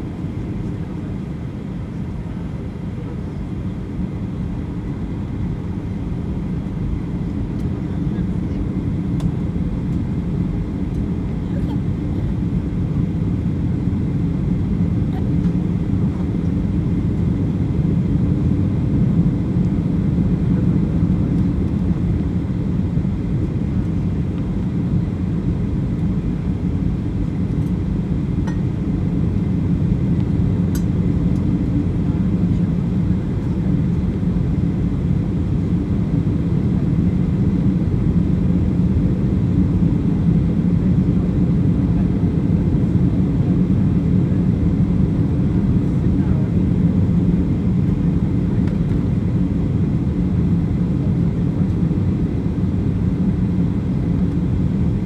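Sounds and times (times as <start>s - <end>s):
jet engine drone in cabin: 0.0s - 55.0s.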